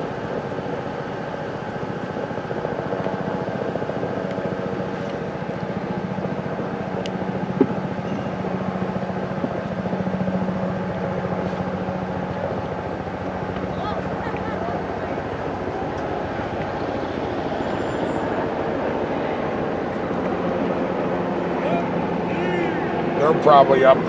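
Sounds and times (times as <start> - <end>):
helicopter engine hum: 0.0 - 24.0
helicopter rotor beating: 0.0 - 24.0.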